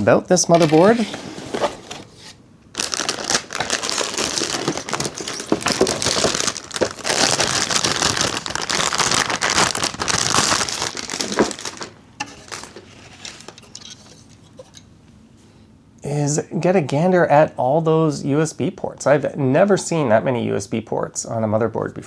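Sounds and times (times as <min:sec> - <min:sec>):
plastic packaging crinkling: 0:00.5 - 0:14.3.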